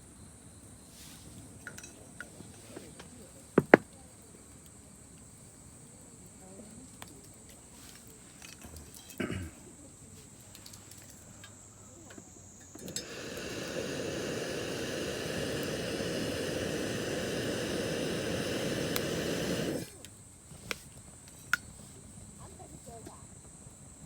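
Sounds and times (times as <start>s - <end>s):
insect drone: 0.0s - 2.6s, 3.4s - 20.5s
rushing hiss: 12.7s - 20.1s.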